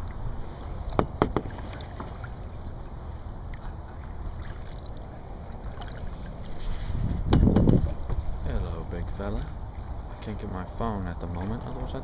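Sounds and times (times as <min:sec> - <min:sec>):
low rumble of water and air: 0:00.0 - 0:12.0
sharp knocks on kayak: 0:00.9 - 0:02.2, 0:07.3 - 0:08.2.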